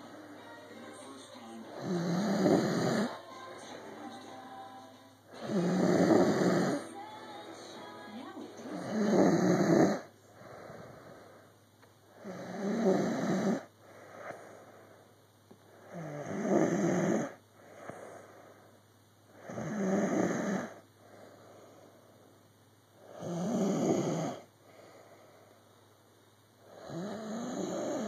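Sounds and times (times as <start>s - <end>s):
quiet breaths: 0.0s - 28.0s
loud snoring: 1.7s - 3.2s, 5.3s - 6.9s, 8.7s - 11.2s, 12.2s - 14.4s, 15.8s - 17.4s, 19.4s - 20.8s, 23.0s - 24.5s, 26.7s - 28.0s.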